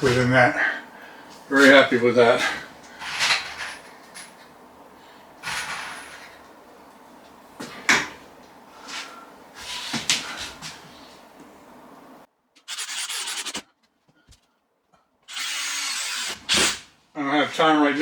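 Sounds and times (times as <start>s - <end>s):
power drill running: 15.3s - 16.8s.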